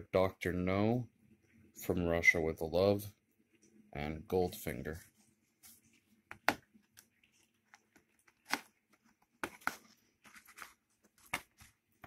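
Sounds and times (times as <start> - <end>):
packaging crinkling and rustling: 6.7 - 12.0.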